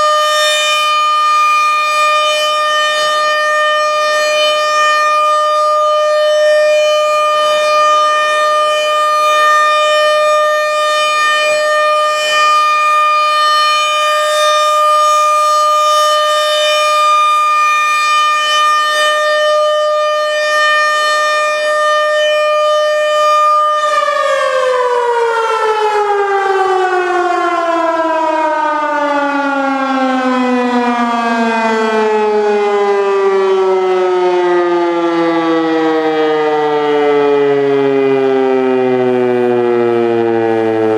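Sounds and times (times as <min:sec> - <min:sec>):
warning siren steady tone: 0:00.0 - 0:40.9.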